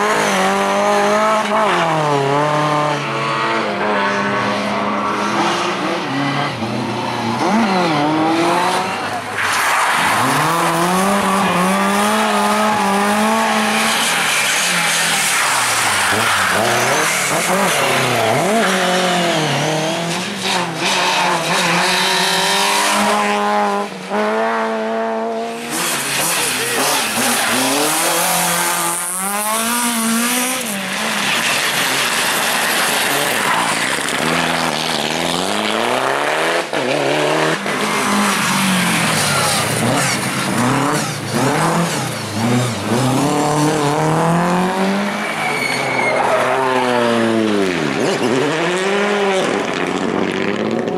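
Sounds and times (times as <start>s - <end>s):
rally car engines revving: 0.0s - 50.9s
tyre squeal: 45.0s - 47.2s.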